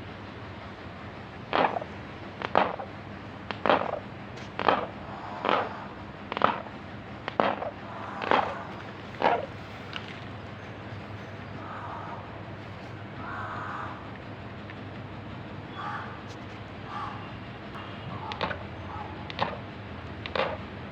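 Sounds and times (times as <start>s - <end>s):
animal grinding teeth: 1.5s - 2.8s, 7.3s - 9.5s.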